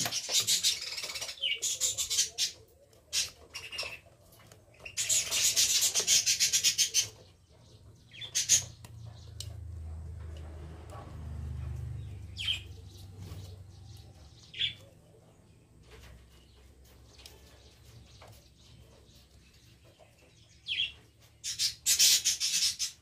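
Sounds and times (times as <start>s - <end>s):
rapid scraping strokes: 0.0s - 7.8s.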